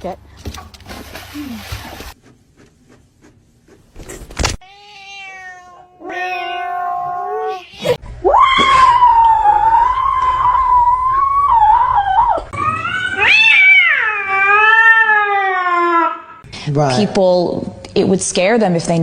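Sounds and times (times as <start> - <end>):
rustling noise: 0.5 - 4.6
cat meowing: 4.6 - 8.0, 12.6 - 16.3.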